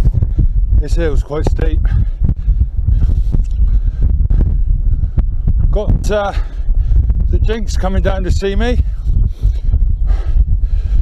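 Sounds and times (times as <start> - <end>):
person breathing heavily: 0.0 - 0.8, 1.8 - 5.6, 6.2 - 7.3, 8.8 - 11.0
wind buffeting microphone: 0.0 - 11.0.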